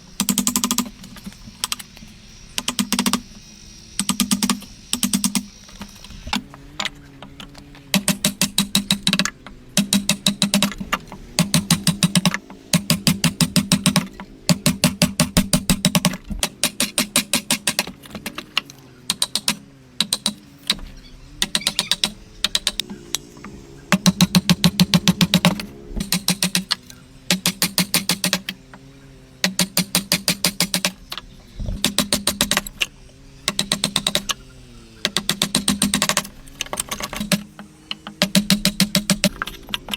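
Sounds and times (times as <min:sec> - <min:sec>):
chisel struck in sharp knocks: 0:07.9 - 0:18.4, 0:35.0 - 0:39.5.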